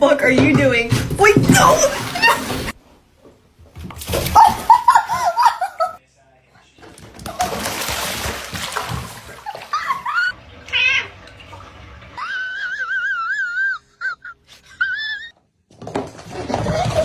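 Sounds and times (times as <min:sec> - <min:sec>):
cat meowing: 0:10.7 - 0:11.2.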